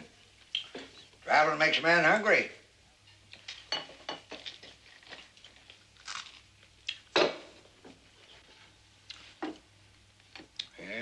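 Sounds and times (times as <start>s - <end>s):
cutlery clinking on plates: 3.1s - 4.8s.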